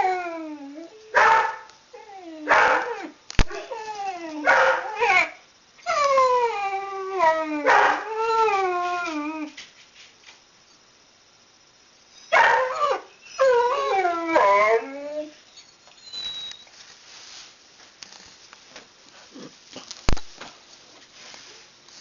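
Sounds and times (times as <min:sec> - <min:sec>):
dog howling: 0:00.0 - 0:09.6, 0:12.3 - 0:15.4.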